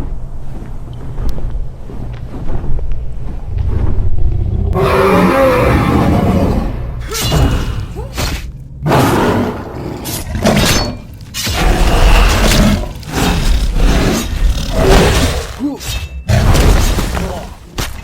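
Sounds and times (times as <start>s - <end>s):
low rumble: 0.0s - 4.8s.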